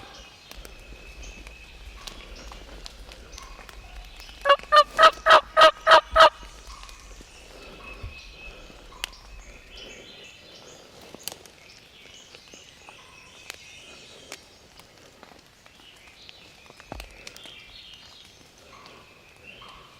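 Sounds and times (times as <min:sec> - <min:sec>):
small birds chirping: 0:00.0 - 0:19.9
wild turkey yelping: 0:03.3 - 0:07.1.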